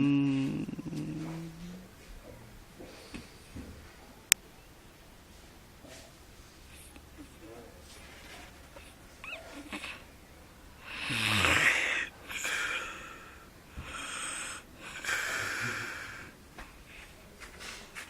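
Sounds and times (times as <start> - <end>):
man snoring: 0.0 - 1.9, 10.8 - 16.4.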